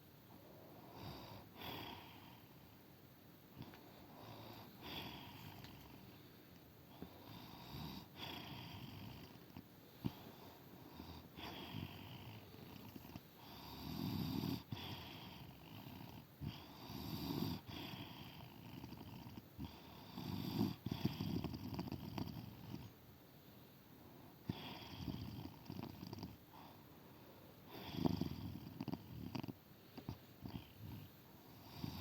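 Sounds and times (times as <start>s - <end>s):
woman snoring: 0.9s - 2.5s, 3.6s - 6.0s, 7.2s - 9.4s, 10.9s - 22.8s, 24.5s - 26.4s, 27.8s - 29.6s, 31.6s - 32.0s.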